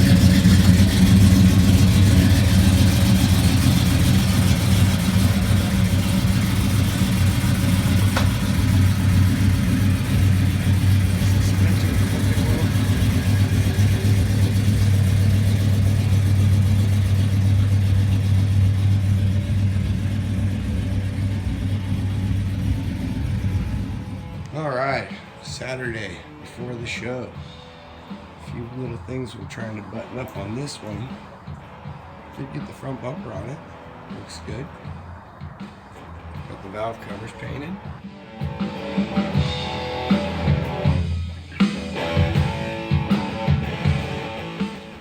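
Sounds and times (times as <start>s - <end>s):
truck engine idling: 0.0s - 24.6s.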